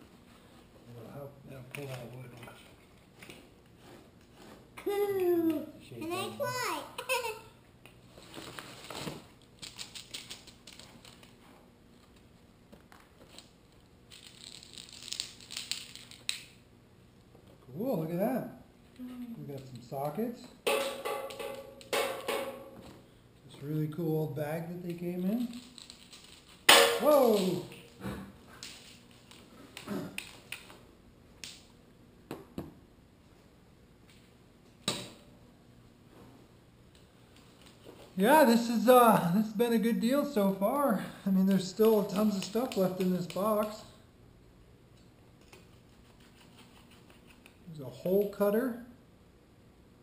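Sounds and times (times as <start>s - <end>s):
hand tools clicking and knocking: 20.7s - 22.8s.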